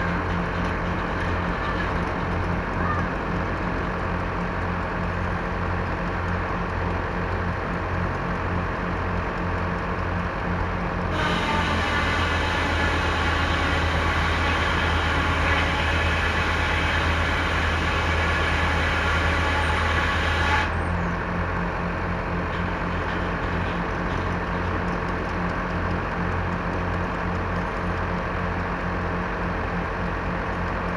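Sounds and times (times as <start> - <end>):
mill engine pulsing: 0.0 - 30.9
circular saw blade cutting log: 11.0 - 21.0, 22.0 - 25.9.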